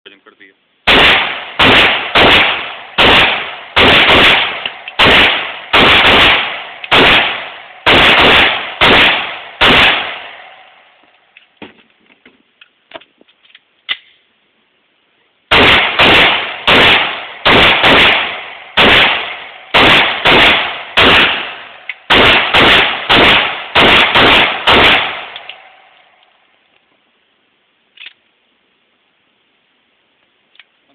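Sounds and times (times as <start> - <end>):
pistol shots: 0.9 - 10.6, 15.5 - 25.8.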